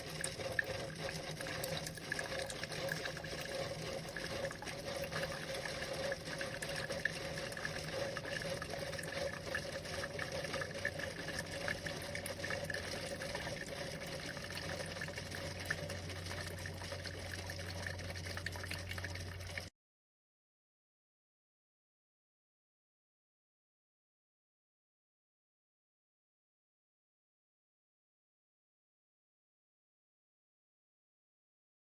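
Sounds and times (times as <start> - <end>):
coffee maker pump humming: 0.0 - 19.7
water filling a cup: 0.0 - 19.7.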